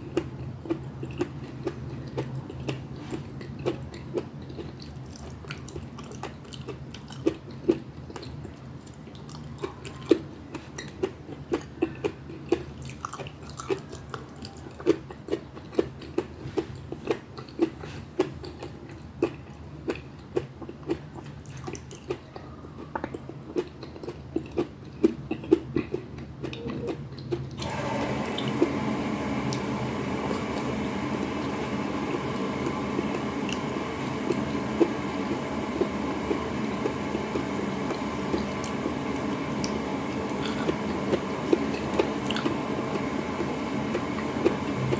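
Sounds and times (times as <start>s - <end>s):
person chewing and smacking: 0.0s - 27.7s, 35.7s - 43.0s
low steady hum: 26.9s - 44.9s
loud steady noise: 27.6s - 44.9s.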